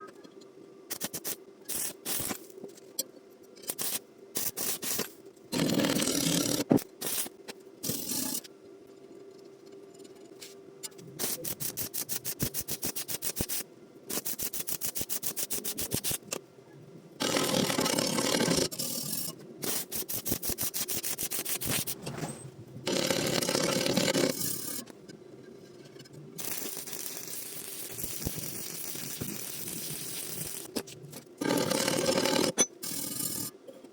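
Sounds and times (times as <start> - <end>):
faint steady hum: 0.0 - 20.4, 21.8 - 33.9
stick welding crackle: 0.9 - 2.6, 11.2 - 16.4, 18.6 - 22.0, 26.4 - 31.3
rapid scraping on metal: 17.2 - 24.9, 25.5 - 33.5.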